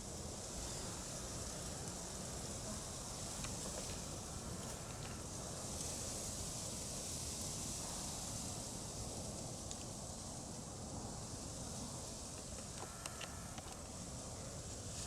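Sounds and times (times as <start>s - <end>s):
faint ticks: 2.6s - 5.2s, 12.3s - 14.0s.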